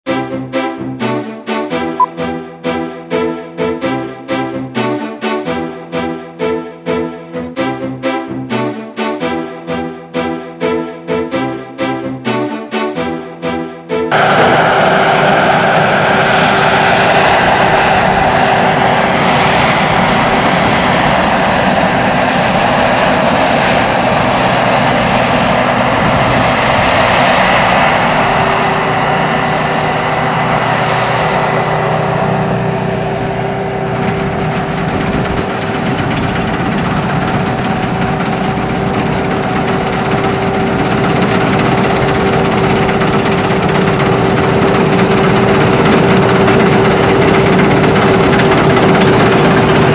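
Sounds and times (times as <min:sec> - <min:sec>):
combine harvester running: 0:14.1 - 0:49.9
constant high whine: 0:14.1 - 0:49.9.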